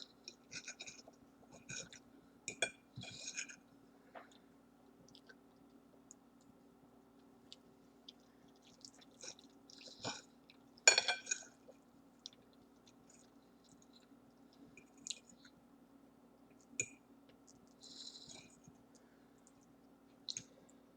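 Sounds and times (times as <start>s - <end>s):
chewing with wet mouth clicks: 4.2s - 15.6s, 16.4s - 20.6s.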